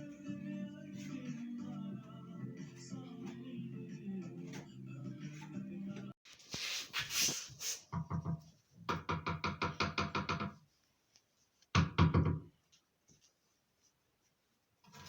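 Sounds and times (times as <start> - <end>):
scraping hiss: 6.3 - 7.9.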